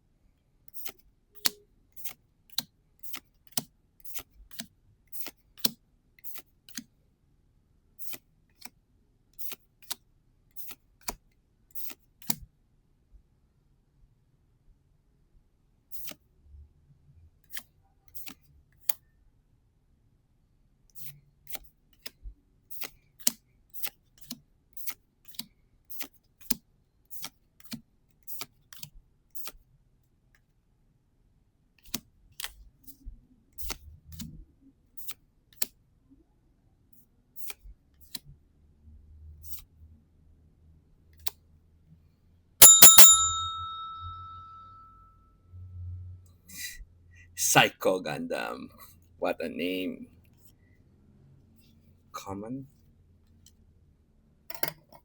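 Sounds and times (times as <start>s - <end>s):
small bell ringing: 42.6s - 45.0s.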